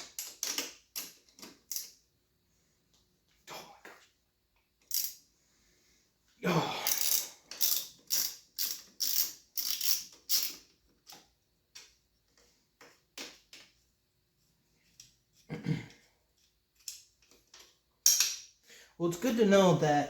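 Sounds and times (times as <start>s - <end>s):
socket ratchet clicking: 6.9s - 10.6s.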